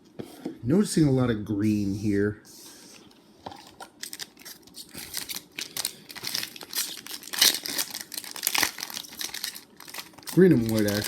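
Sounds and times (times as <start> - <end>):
card packaging crinkling: 4.0 - 11.0.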